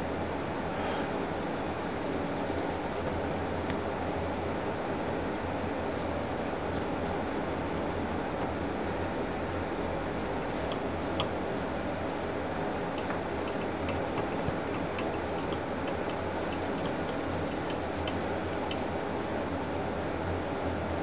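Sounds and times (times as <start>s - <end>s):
steady hiss and low hum: 0.0s - 21.0s
small clicks and ticks: 13.0s - 18.8s.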